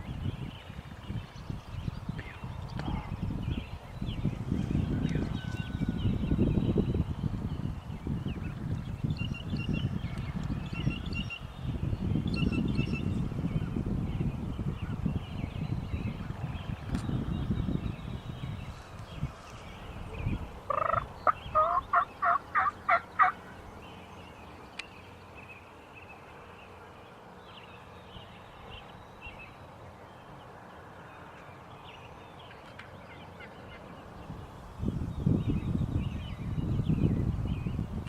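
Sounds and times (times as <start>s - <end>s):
faint songbird chirps: 0.0s - 38.0s
turkey gobbling: 20.7s - 23.4s.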